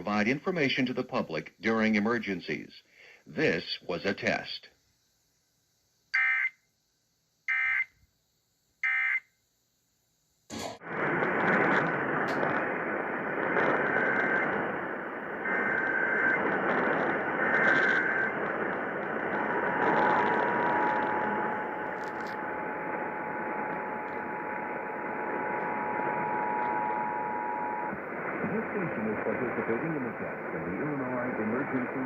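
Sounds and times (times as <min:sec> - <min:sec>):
radio static hiss: 0:00.0 - 0:04.9, 0:10.5 - 0:32.0
warbling data bursts: 0:10.8 - 0:32.0
faint steady tone: 0:11.4 - 0:32.0.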